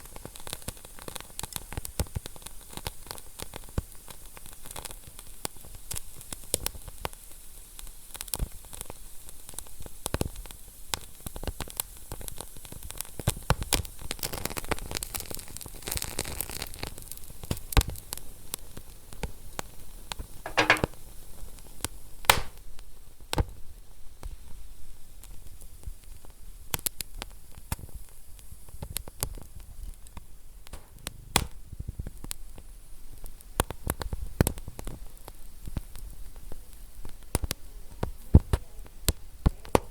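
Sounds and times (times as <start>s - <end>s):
wood fire crackling: 22.3s - 22.6s.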